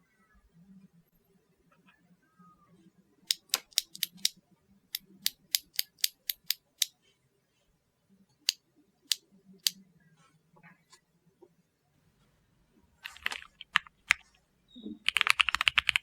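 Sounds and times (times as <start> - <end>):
mechanical keyboard keys clacking: 3.3 - 4.4, 5.0 - 6.9, 13.0 - 14.2, 15.0 - 16.0.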